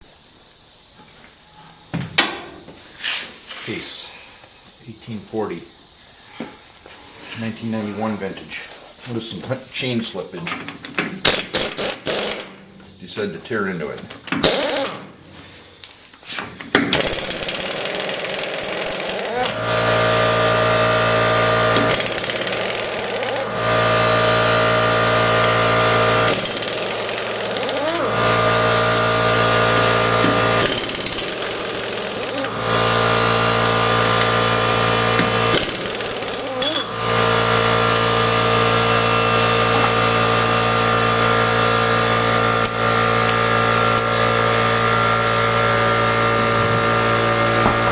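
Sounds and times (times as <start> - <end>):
impact wrench hammering: 11.3 - 12.6, 14.4 - 15.0, 16.8 - 47.9
steady machine hum: 17.1 - 47.9.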